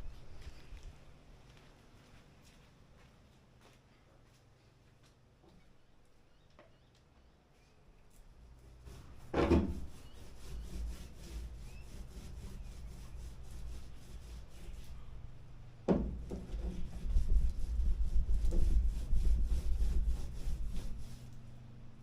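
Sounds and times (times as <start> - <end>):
panel scraping against hull: 8.8 - 15.0, 15.9 - 21.4
knocks: 15.9 - 16.9.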